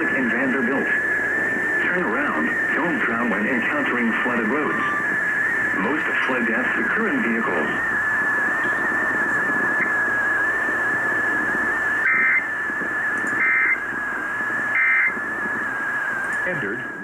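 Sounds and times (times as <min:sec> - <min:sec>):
constant high whistle: 0:00.0 - 0:17.0
radio static: 0:00.0 - 0:17.0
warbling digital tone bursts: 0:02.1 - 0:10.6.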